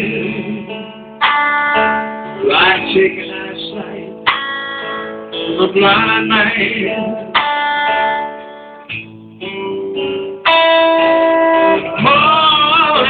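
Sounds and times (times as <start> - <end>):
person singing: 0.0 - 1.4, 2.3 - 7.6, 11.6 - 13.0
blues band playing: 0.0 - 13.0
guitar holding long notes: 0.0 - 13.0.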